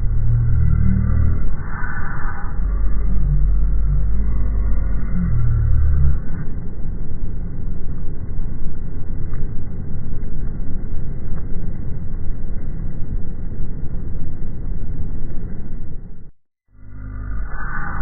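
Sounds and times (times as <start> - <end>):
loud low rumbling: 0.0 - 18.0.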